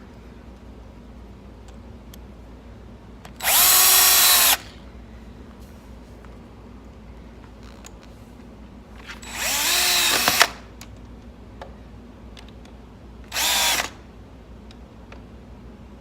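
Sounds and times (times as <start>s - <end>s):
power drill driving screws: 3.4s - 4.7s, 9.2s - 10.6s, 13.3s - 14.0s
sharp drill click: 3.4s - 4.8s, 9.2s - 10.7s, 13.3s - 14.0s.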